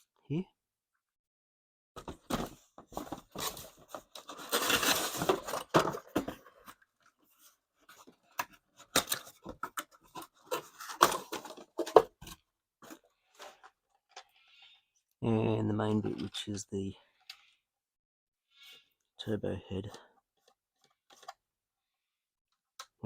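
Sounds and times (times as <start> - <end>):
packaging rustling and tearing: 2.9 - 6.4.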